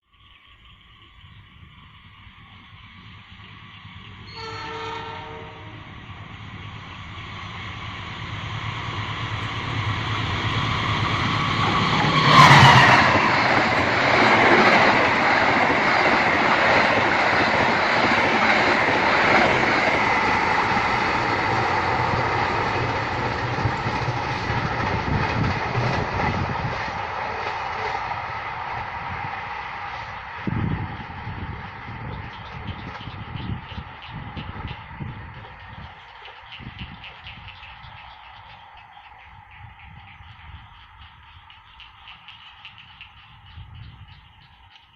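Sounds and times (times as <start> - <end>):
train wheels clattering on rails: 1.9 - 44.9
train horn blast: 4.3 - 6.0.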